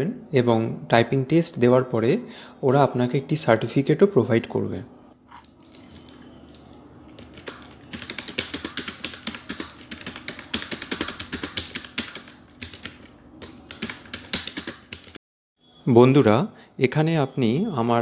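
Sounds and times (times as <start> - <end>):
fast keyboard typing: 5.6 - 15.2.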